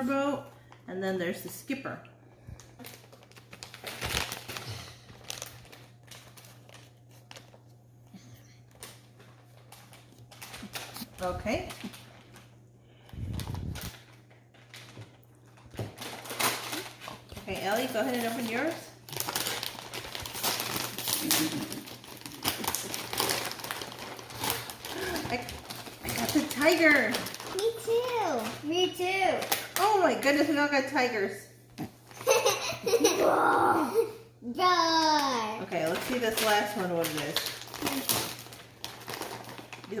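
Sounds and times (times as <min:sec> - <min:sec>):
plastic packaging crinkling: 0:02.4 - 0:30.0, 0:35.8 - 0:40.0.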